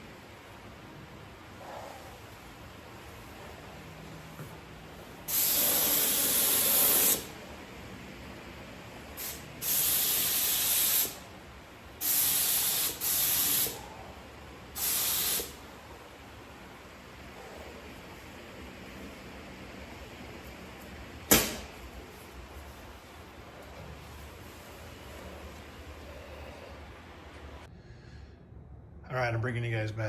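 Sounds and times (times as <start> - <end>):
air spray gun hissing: 5.2 - 7.4, 9.1 - 11.4, 12.0 - 14.0, 14.7 - 15.6.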